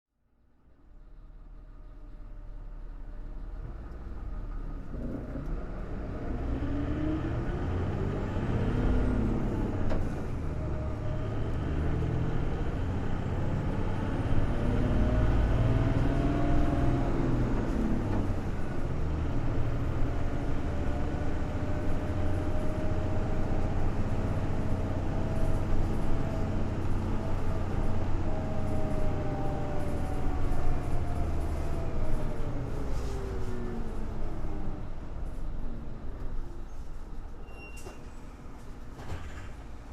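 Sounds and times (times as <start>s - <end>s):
bus diesel engine revving: 3.2s - 37.0s.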